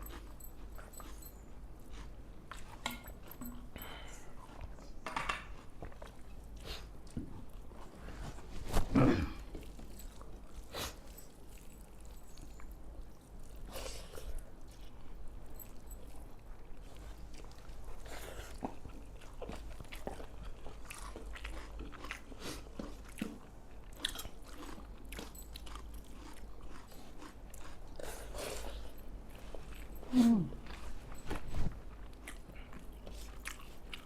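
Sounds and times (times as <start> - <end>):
people chewing food: 0.0 - 34.0.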